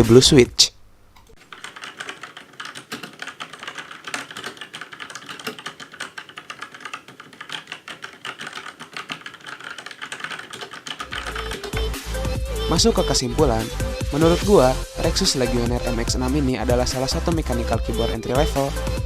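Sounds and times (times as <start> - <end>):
mechanical keyboard typing: 1.4 - 12.0.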